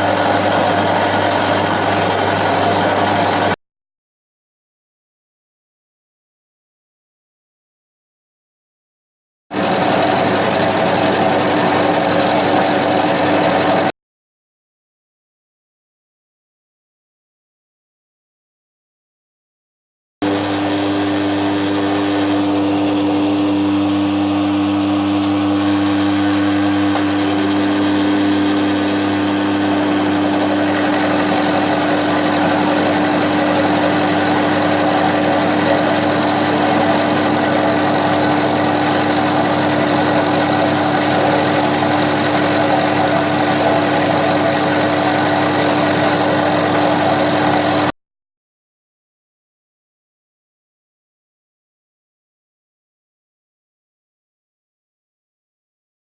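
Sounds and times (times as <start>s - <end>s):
harsh cutting noise: 0.0s - 3.6s, 9.6s - 13.9s, 20.2s - 47.9s
milling machine motor hum: 0.0s - 3.6s, 9.6s - 13.9s, 20.2s - 47.9s.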